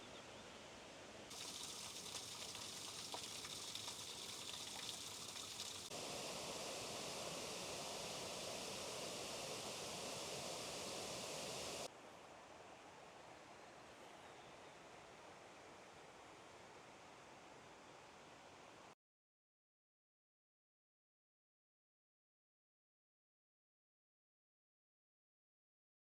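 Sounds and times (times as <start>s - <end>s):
outdoor ambience: 0.0s - 18.9s
mountain stream rushing: 1.3s - 11.9s.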